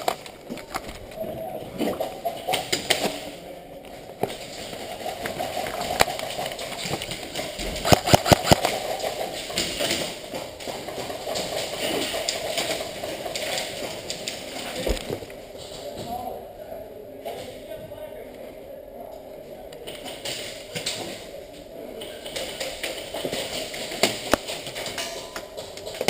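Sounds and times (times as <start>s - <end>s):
airsoft guns firing: 7.8s - 9.9s.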